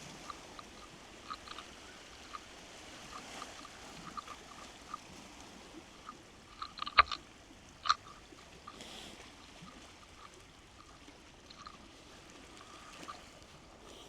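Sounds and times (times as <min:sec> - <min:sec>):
sharp clicks: 0:00.0 - 0:05.1, 0:06.0 - 0:07.2, 0:07.8 - 0:11.8
faint scattered ticking: 0:00.0 - 0:14.0.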